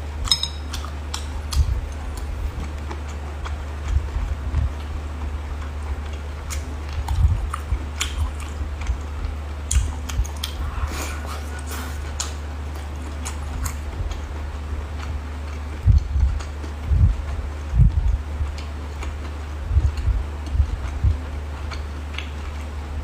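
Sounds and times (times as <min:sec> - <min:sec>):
steady low hum: 0:00.0 - 0:23.0
sharp wet clicks: 0:00.2 - 0:03.6, 0:06.1 - 0:10.6
chewing and biting: 0:00.2 - 0:22.8.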